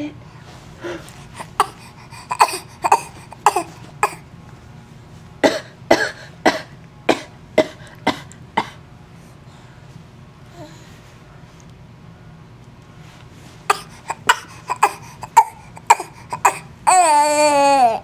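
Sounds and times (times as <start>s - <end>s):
person coughing: 1.6s - 4.2s, 5.4s - 8.8s, 13.7s - 16.7s.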